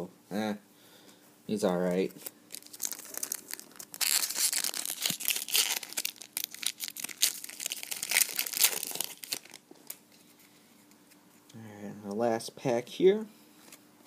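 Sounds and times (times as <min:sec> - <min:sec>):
card pack wrapper crinkling: 0:02.2 - 0:10.0.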